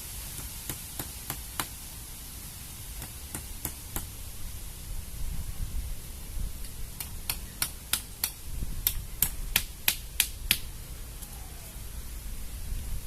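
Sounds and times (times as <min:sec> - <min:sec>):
wind rumbling on microphone: 0:04.1 - 0:13.0.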